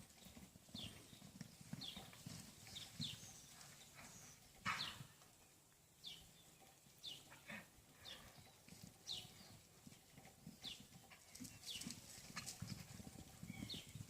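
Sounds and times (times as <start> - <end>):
faint hoofbeats: 0.0 - 14.0.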